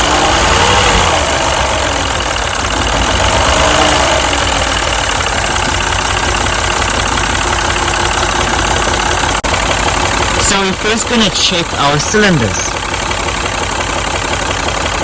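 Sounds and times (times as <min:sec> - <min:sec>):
car engine idling roughly: 0:00.0 - 0:15.0.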